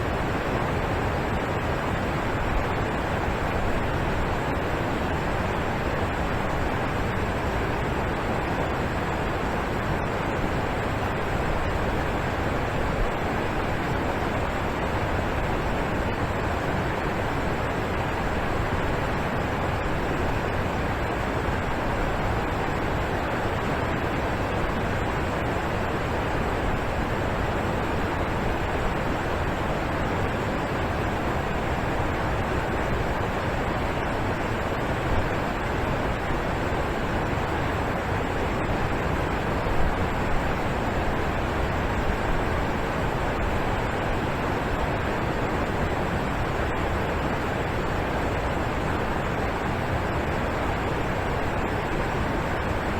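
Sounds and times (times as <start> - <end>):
waterfall rushing: 0.0 - 52.9.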